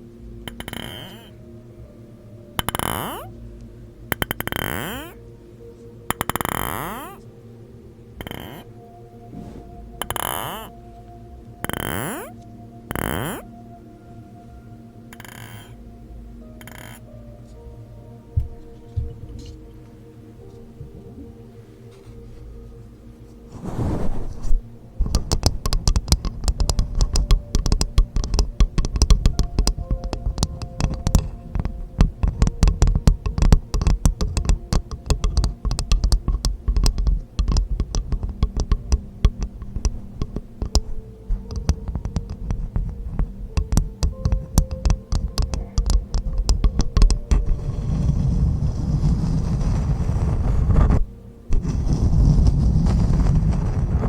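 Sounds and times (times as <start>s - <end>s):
steady hiss: 0.0s - 54.0s
rapid close-up tapping: 25.0s - 48.4s.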